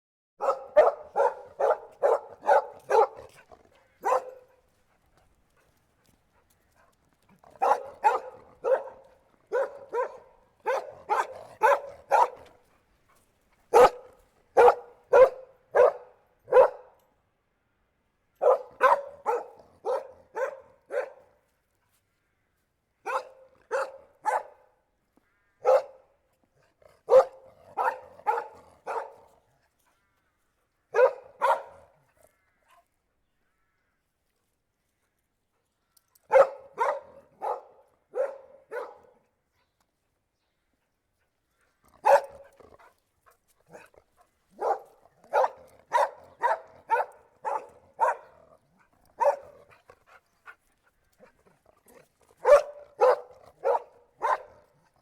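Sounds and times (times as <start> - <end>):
dog barking: 0.4 - 4.6, 7.6 - 12.6, 13.7 - 17.0, 18.4 - 21.4, 23.0 - 24.8, 25.6 - 26.1, 27.0 - 29.4, 30.9 - 31.9, 36.3 - 39.3, 42.0 - 42.5, 44.5 - 49.7, 52.4 - 54.8.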